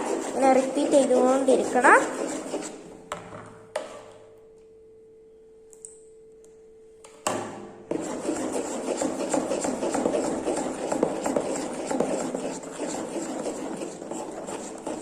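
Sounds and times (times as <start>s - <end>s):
spoon scraping slime in bowl: 0.0s - 2.9s, 7.9s - 15.0s
faint steady hum: 0.0s - 15.0s.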